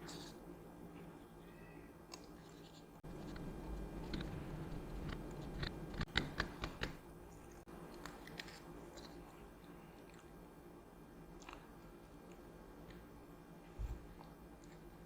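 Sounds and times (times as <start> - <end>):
small clicks and taps: 5.0 - 7.0.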